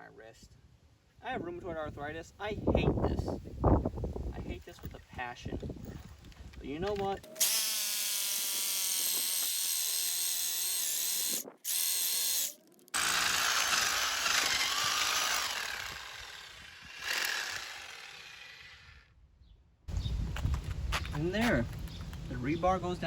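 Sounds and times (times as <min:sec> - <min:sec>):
electric jackhammer hammering: 0:07.3 - 0:18.9.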